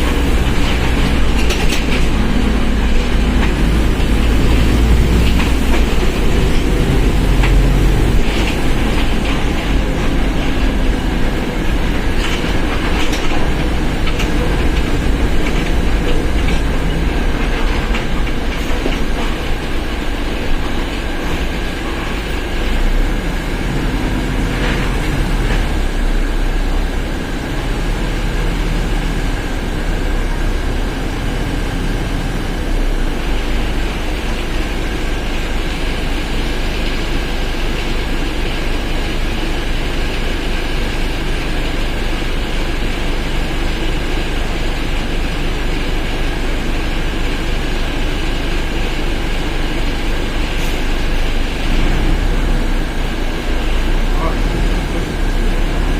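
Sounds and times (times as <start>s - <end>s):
knocks and rattles: 0.0s - 19.9s
bus engine rumbling: 0.0s - 55.9s.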